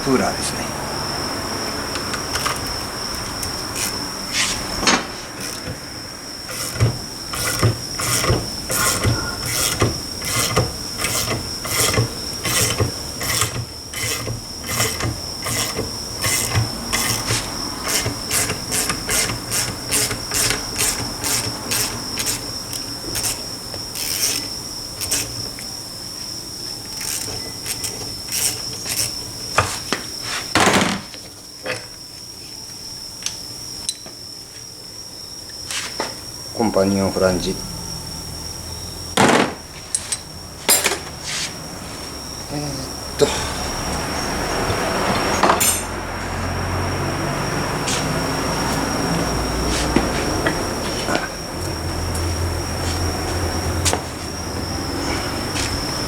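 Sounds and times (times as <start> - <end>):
sharp metal knocks: 4.8 - 5.3, 45.4 - 46.0.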